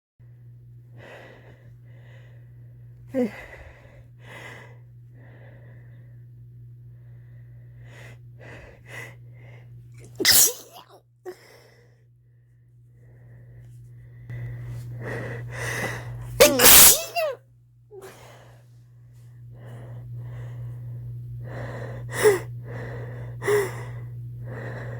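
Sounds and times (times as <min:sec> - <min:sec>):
person stifling sneezes: 0:10.1 - 0:11.0, 0:16.4 - 0:17.4.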